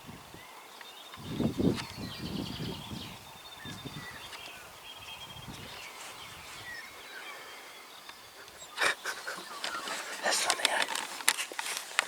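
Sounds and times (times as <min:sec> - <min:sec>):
wind buffeting microphone: 0:00.0 - 0:00.5, 0:01.2 - 0:07.1
small birds chirping: 0:00.0 - 0:12.0.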